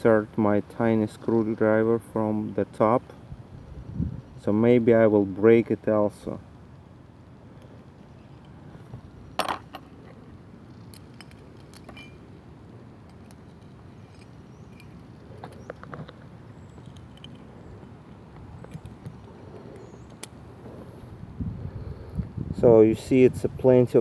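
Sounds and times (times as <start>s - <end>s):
light metallic clicks and rattles: 9.4s - 12.2s, 13.0s - 18.0s.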